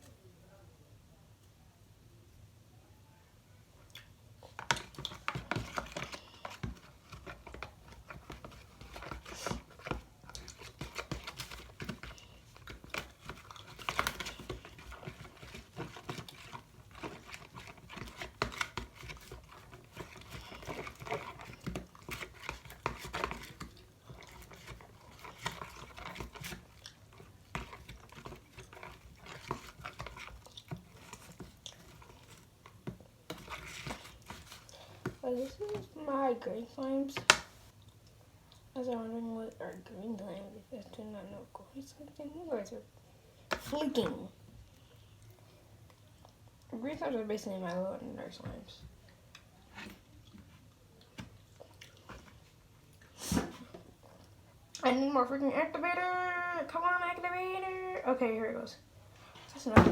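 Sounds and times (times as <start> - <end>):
slime squishing by hand: 4.4 - 36.1.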